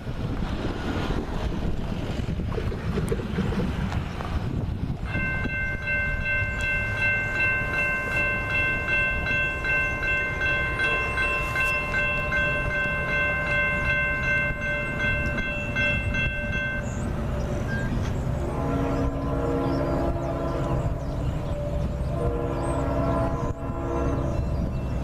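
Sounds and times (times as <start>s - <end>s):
railroad crossing bell ringing: 5.0s - 25.0s.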